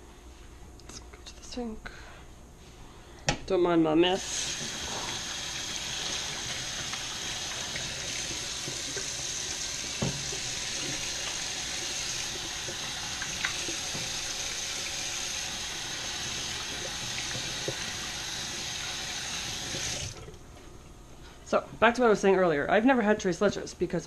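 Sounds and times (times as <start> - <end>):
tap running into sink: 4.5 - 14.6.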